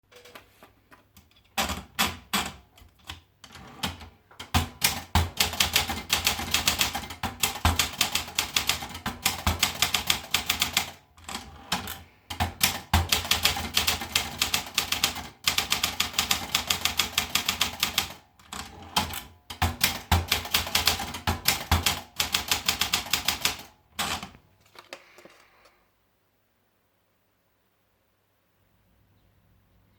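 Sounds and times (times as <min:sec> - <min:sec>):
typewriter keys typing: 0:01.5 - 0:25.4.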